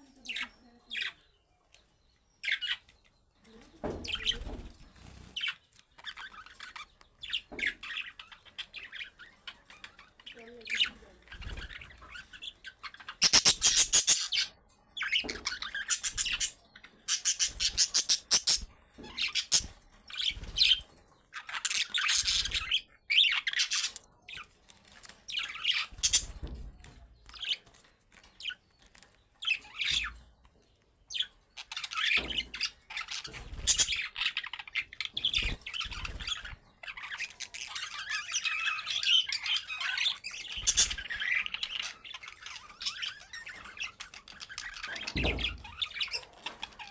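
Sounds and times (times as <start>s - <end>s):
budgerigars chattering and squawking: 0.0s - 1.4s, 2.4s - 30.3s, 31.1s - 46.9s.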